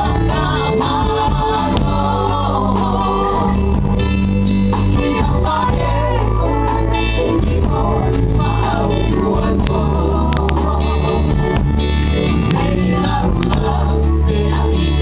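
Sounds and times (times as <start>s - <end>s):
guitars and bass guitar: 0.0s - 15.0s.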